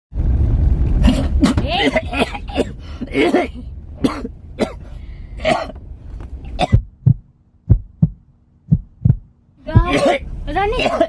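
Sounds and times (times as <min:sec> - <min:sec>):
man coughing: 0:01.0 - 0:05.8, 0:09.9 - 0:11.0.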